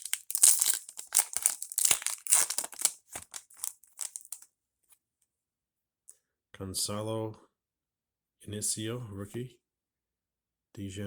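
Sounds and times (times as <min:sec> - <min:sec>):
foil wrapper tearing and crinkling: 0:00.0 - 0:04.4.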